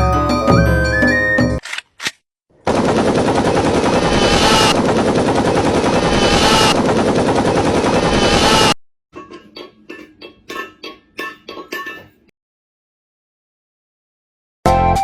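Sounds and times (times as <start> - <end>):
loud rapid rattling: 2.6 - 8.8.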